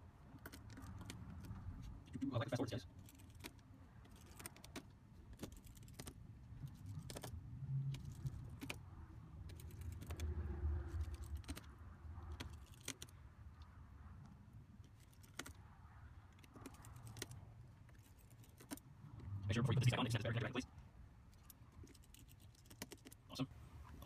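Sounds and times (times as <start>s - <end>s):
low handling rumble: 19.0s - 20.6s.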